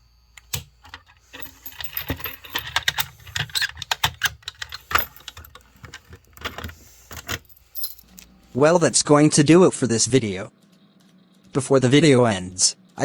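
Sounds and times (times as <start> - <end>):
keys jangling: 1.3 - 8.3.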